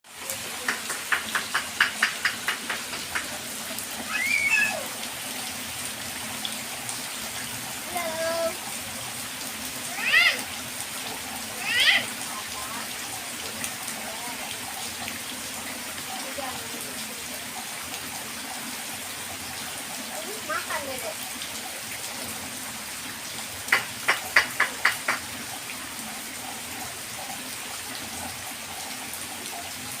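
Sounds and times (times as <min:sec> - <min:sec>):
steady rain hiss: 0:00.0 - 0:30.0
sharp slaps or splashes: 0:00.6 - 0:03.3, 0:23.7 - 0:25.2.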